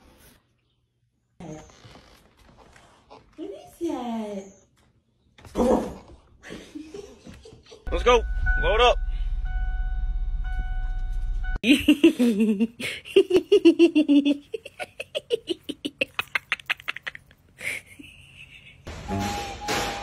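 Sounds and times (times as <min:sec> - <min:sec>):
low hum: 0:08.0 - 0:11.6.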